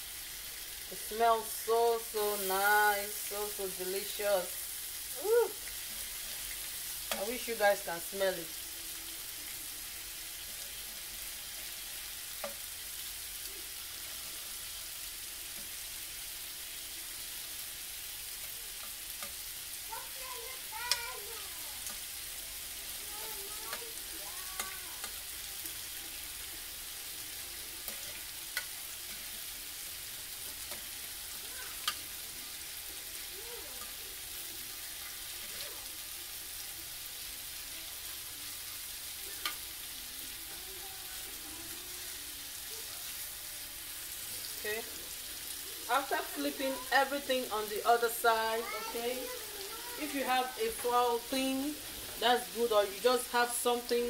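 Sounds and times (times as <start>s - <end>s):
meat sizzling on a grill: 0.0s - 54.0s
utensil clicking against grill: 27.8s - 29.2s, 31.8s - 32.0s.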